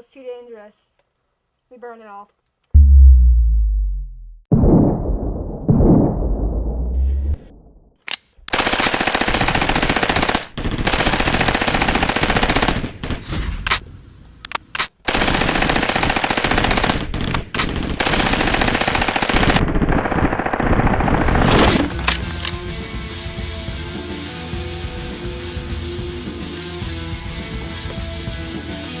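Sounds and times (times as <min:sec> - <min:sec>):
automatic gunfire bursts: 0:08.5 - 0:13.2, 0:14.8 - 0:21.3.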